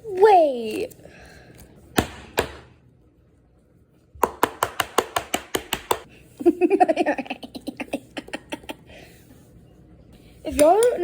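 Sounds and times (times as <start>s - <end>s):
rapid taps on hard object: 4.2s - 6.1s.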